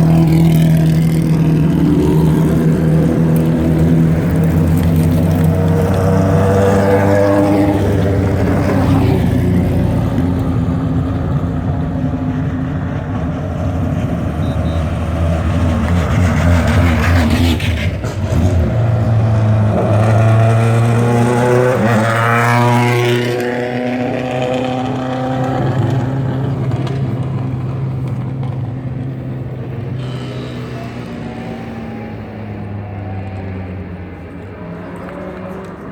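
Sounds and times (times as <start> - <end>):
engine revving: 0.0 - 35.9
race car engines driving past: 0.0 - 35.9.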